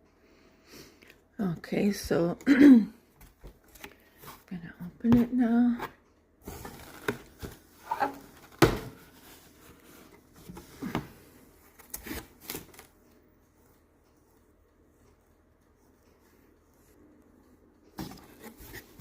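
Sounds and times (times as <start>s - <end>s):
cardboard rustling: 6.4s - 13.0s, 17.9s - 19.0s.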